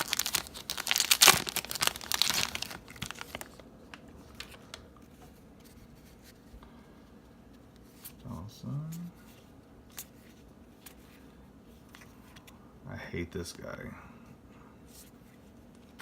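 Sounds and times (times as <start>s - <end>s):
wrapper tearing and crinkling: 0.0s - 3.6s.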